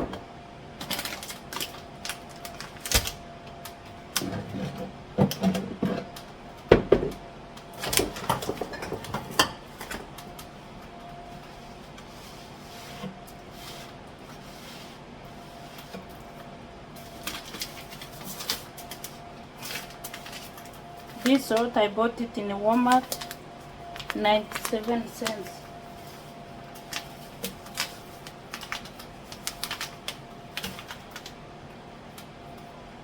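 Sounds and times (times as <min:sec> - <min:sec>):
containers knocking and clattering: 0:07.8 - 0:09.7.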